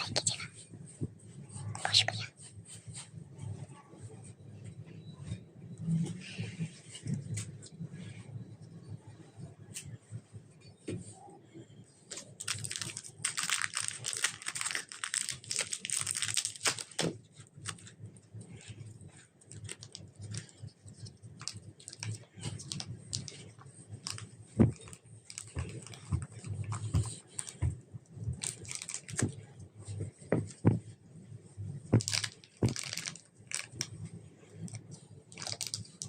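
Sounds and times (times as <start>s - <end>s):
slime kneaded by hand crackling: 12.2s - 30.9s, 31.7s - 36.0s.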